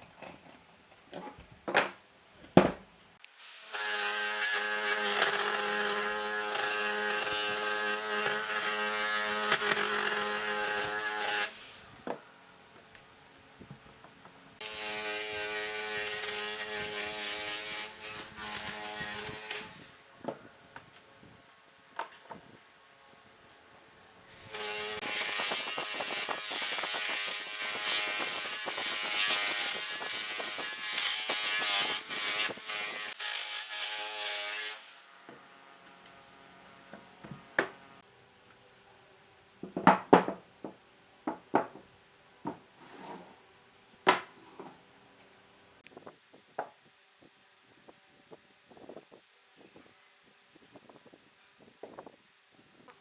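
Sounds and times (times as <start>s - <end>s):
power tool cutting wood: 3.4s - 11.8s, 14.6s - 19.8s, 24.4s - 35.1s.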